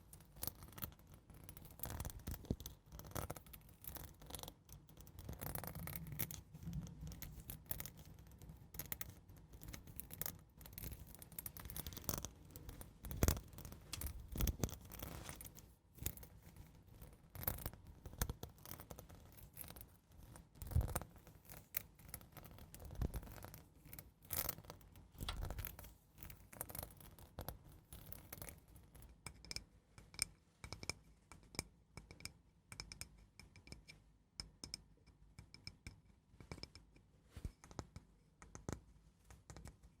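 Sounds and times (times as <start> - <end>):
scratching close to microphone: 11.6 - 15.7, 25.2 - 26.0.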